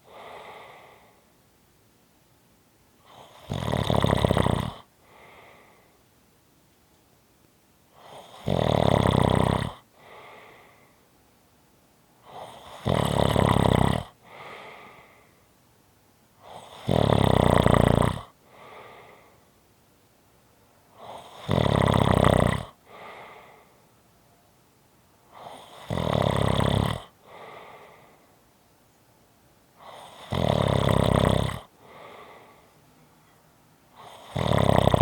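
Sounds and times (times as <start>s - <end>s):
person snoring: 0.0s - 1.2s, 3.1s - 5.8s, 8.0s - 10.8s, 12.2s - 15.2s, 16.4s - 19.3s, 21.0s - 23.7s, 25.3s - 28.2s, 29.8s - 32.6s, 34.0s - 35.0s
faint breath out: 0.0s - 1.3s, 5.0s - 6.0s, 9.9s - 11.1s, 14.2s - 15.5s, 18.4s - 19.6s, 22.8s - 24.0s, 27.2s - 28.4s, 31.8s - 34.3s.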